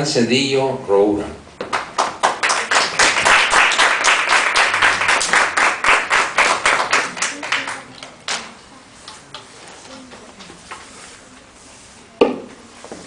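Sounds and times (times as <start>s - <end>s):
audience applauding: 1.7s - 8.5s.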